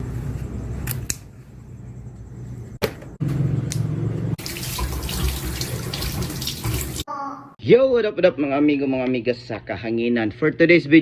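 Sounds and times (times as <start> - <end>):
water running from tap: 4.4 - 7.1.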